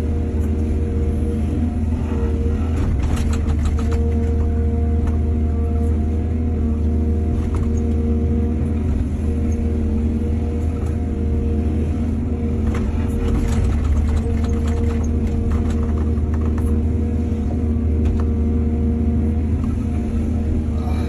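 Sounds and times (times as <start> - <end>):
heavy diesel engine running: 0.0 - 21.0
knocks and clatter: 2.7 - 5.2, 12.6 - 16.8.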